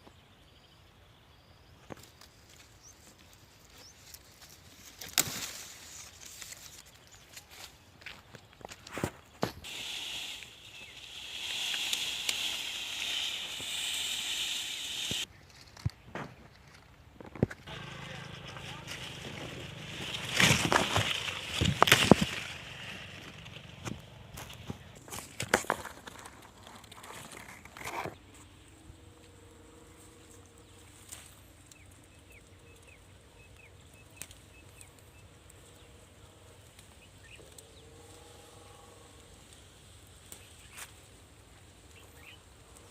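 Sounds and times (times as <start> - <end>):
high-pitched hiss: 9.5 - 15.3.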